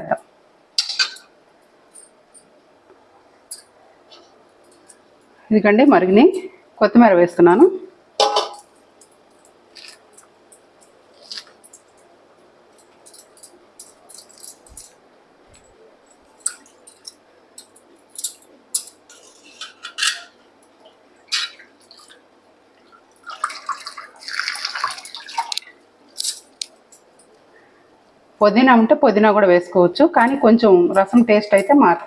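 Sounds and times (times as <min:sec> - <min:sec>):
metal utensil clinking on a pot: 0:08.2 - 0:08.7, 0:16.4 - 0:20.4.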